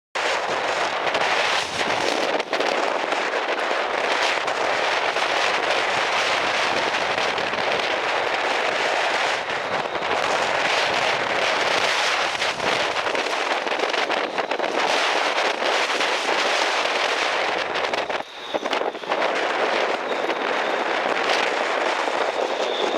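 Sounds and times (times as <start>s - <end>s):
strong wind: 0.2s - 22.9s.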